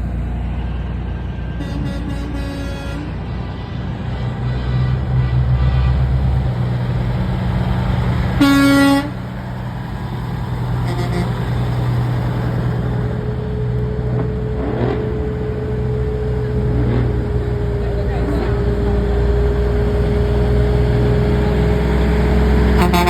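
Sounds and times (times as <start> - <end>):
truck engines rumbling: 0.0 - 23.0
truck horn blast: 1.5 - 3.4, 4.4 - 6.7, 8.3 - 9.4, 10.8 - 11.8, 22.6 - 23.0.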